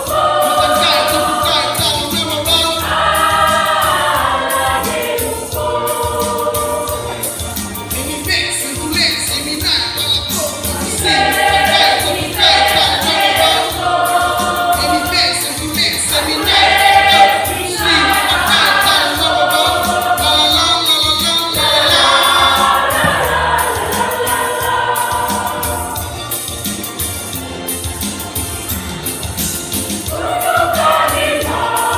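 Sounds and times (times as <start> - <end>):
choir singing a hymn: 0.0 - 7.4, 10.3 - 26.5, 30.0 - 31.9.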